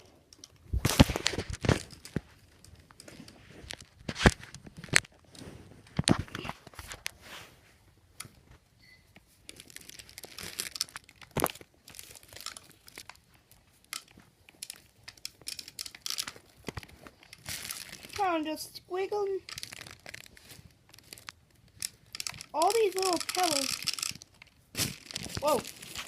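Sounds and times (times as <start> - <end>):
crinkling and tearing: 0.7 - 7.2, 9.4 - 18.5, 19.2 - 26.0
dense rustling: 19.2 - 26.0
sharp clicks: 21.0 - 25.7.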